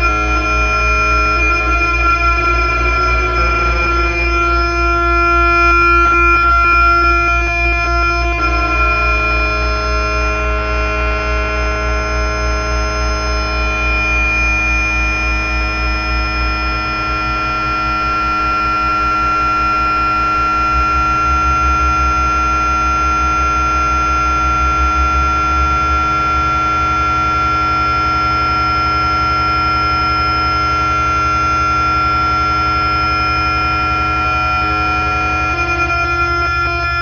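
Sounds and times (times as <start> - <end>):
synthesizer high tones: 0.0 - 9.6
low pulsing synthesizer buzz: 0.0 - 37.0.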